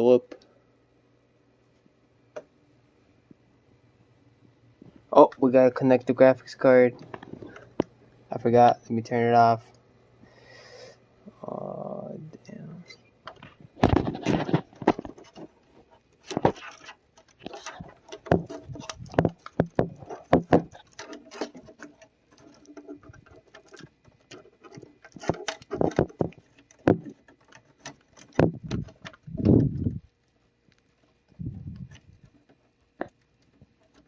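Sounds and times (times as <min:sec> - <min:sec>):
hands handling computer parts: 0:06.9 - 0:07.9, 0:13.3 - 0:34.0.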